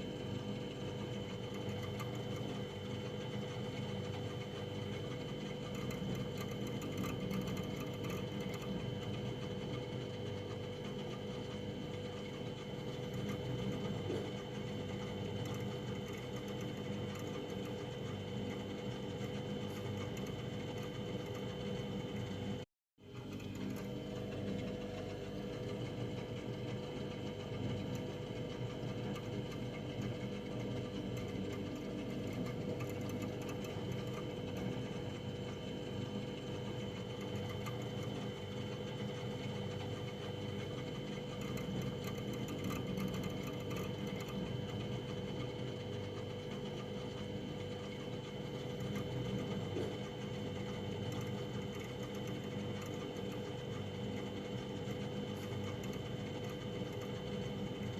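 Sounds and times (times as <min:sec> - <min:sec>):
freezer humming with high whine: 0:00.0 - 0:57.9.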